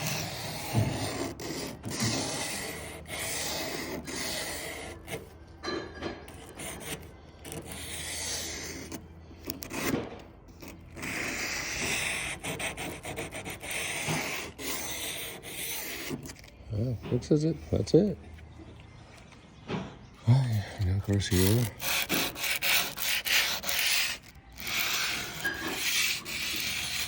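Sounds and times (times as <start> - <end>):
sanding cloth rasping on metal edge: 0.0 - 5.2, 21.2 - 27.0.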